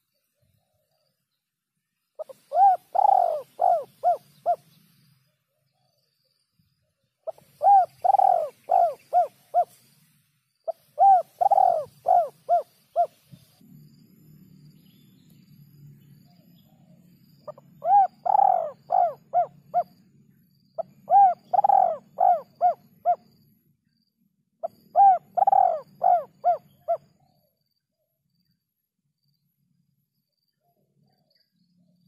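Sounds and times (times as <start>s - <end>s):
dove cooing: 2.2s - 4.7s, 7.3s - 9.8s, 10.7s - 13.3s, 17.4s - 20.0s, 20.8s - 23.3s, 24.6s - 27.2s.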